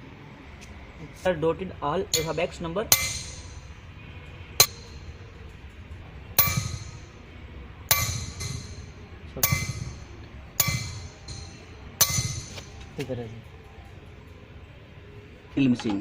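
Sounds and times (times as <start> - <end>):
hammer tapping metal punch: 2.1 - 3.8, 4.6 - 5.2, 6.4 - 7.2, 7.9 - 13.0.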